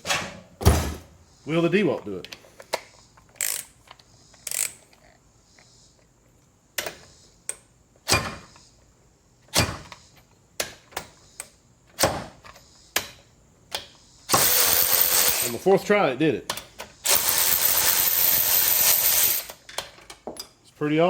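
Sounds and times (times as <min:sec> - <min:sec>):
cordless ratchet bursts and clunks: 0:14.3 - 0:15.5, 0:17.1 - 0:19.5.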